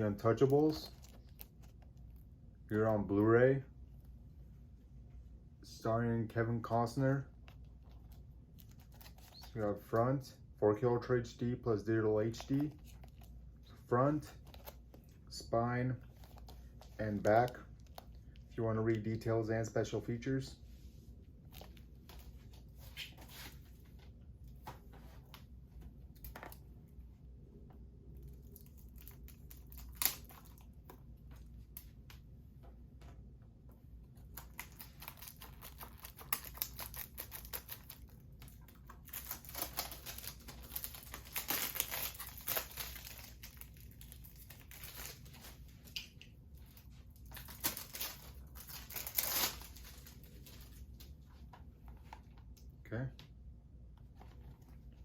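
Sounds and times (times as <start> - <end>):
plastic wrapping tearing and crinkling: 28.3 - 30.7, 34.2 - 51.1.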